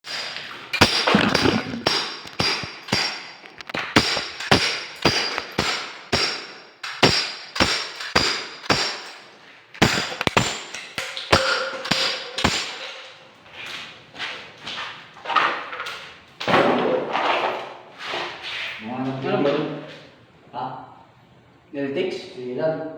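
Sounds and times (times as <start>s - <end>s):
hammer blows with metallic ring: 0.0s - 3.4s, 4.0s - 13.1s.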